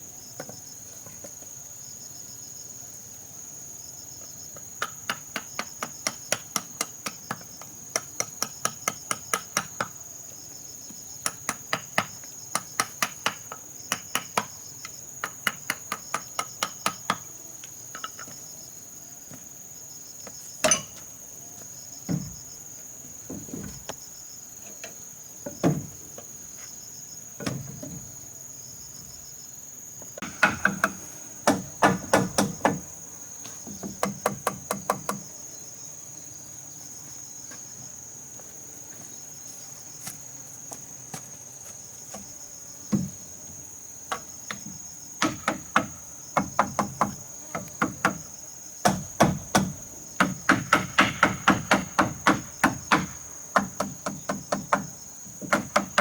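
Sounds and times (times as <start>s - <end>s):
crickets trilling: 0.0s - 56.0s
hammer nailing into wood: 30.2s - 32.9s, 33.8s - 35.2s, 45.2s - 56.0s
heavy single knocks: 30.2s - 32.9s, 44.1s - 56.0s.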